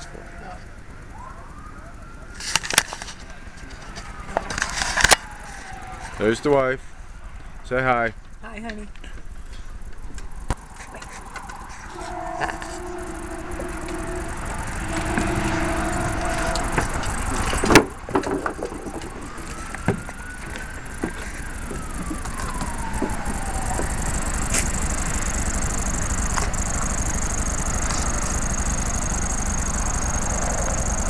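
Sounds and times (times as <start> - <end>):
rumble of passing train: 0.0 - 2.0, 2.6 - 31.0
high insect buzz: 9.7 - 21.9, 22.6 - 31.0
faint long dog howl: 10.8 - 17.6
two-note train horn: 11.2 - 18.0.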